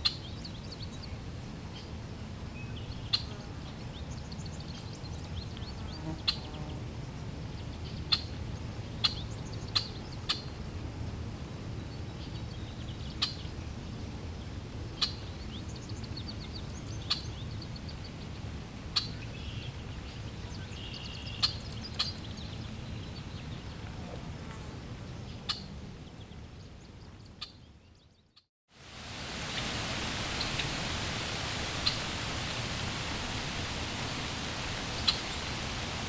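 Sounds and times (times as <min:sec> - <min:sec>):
small birds chirping: 0:14.4 - 0:24.2, 0:29.6 - 0:36.0
flowing water: 0:28.7 - 0:36.0.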